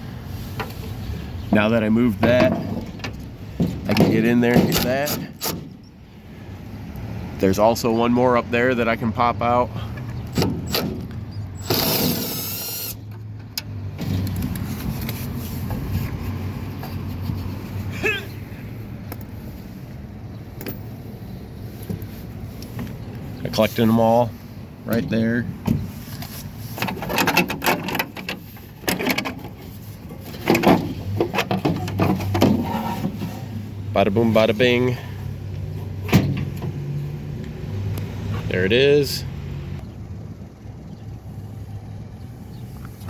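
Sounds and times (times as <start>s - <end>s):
cordless electric ratchet whirring: 11.6s - 13.0s.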